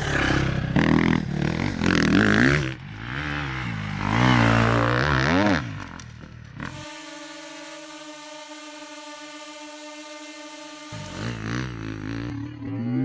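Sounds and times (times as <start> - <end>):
motorcycle accelerating hard: 0.0 - 6.9, 10.9 - 13.0.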